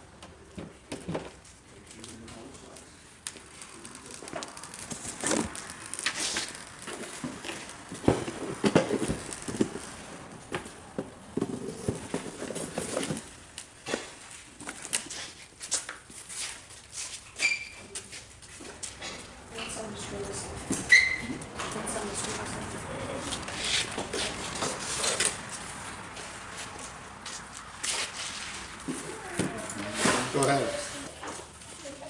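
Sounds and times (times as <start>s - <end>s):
plastic film crinkling: 3.2s - 8.0s.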